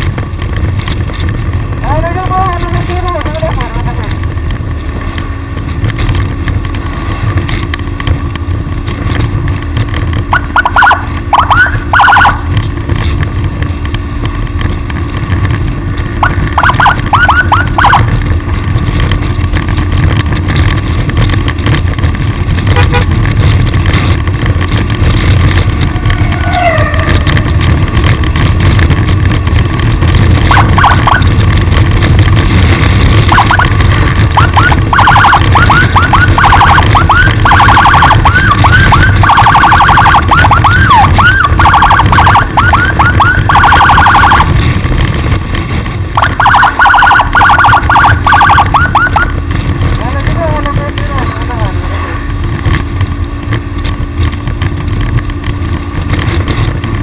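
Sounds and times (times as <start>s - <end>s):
vehicle wind and road noise: 0.0s - 57.0s
yelping siren chirps: 10.3s - 12.4s, 16.2s - 18.1s, 26.1s - 27.2s, 30.5s - 31.4s, 33.3s - 44.5s, 46.2s - 49.4s.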